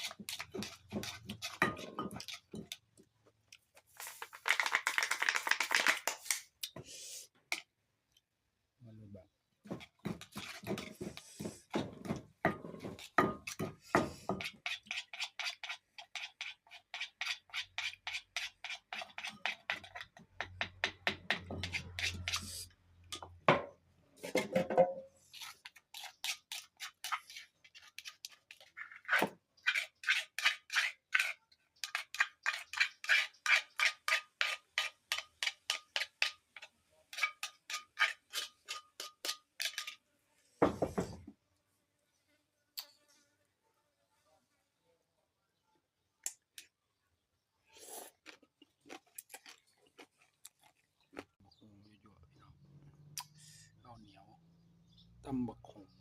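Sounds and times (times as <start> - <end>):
pestle pounding in wooden mortar: 0.0 - 2.8, 9.7 - 14.8, 18.7 - 22.2.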